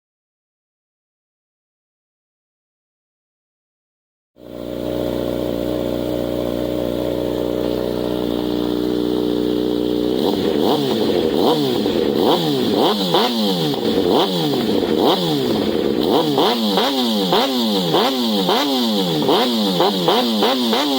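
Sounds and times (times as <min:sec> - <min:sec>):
motorcycle engine idling and revving: 0:04.4 - 0:20.9.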